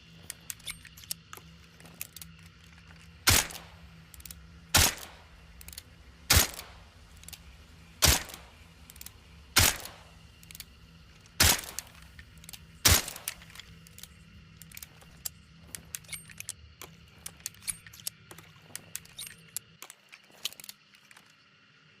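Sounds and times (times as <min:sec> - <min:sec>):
light metallic clicks and rattles: 0:00.0 - 0:21.5
silenced revolver shots: 0:03.3 - 0:03.7, 0:04.7 - 0:05.2, 0:06.3 - 0:06.8, 0:08.0 - 0:08.6, 0:09.6 - 0:10.2, 0:11.4 - 0:12.0, 0:12.8 - 0:13.4.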